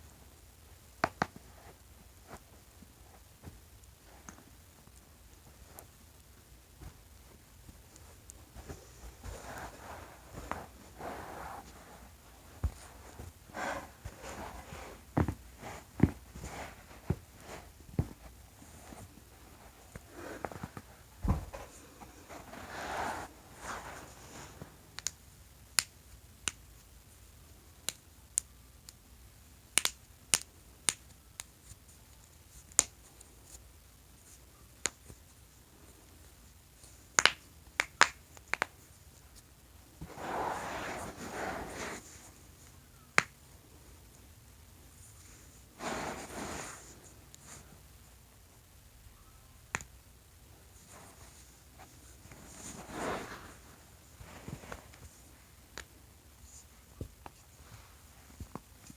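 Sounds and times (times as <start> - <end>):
soft rustling: 0.0 - 25.4, 38.4 - 49.3, 50.3 - 58.9.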